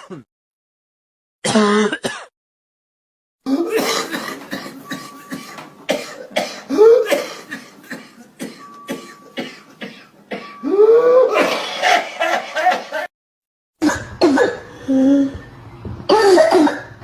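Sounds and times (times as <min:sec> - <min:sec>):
person coughing: 0:00.0 - 0:00.2, 0:03.5 - 0:13.1.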